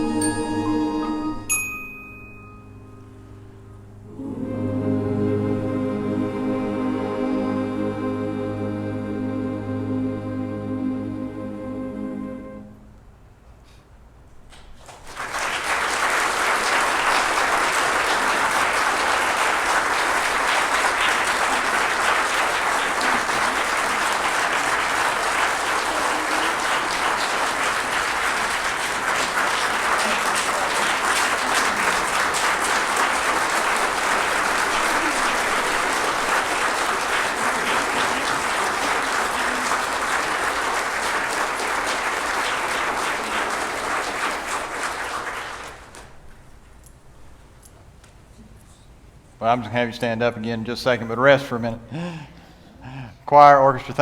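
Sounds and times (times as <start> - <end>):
choir and orchestra music: 0.0 - 1.6, 3.6 - 13.1
large audience applauding: 14.5 - 46.3.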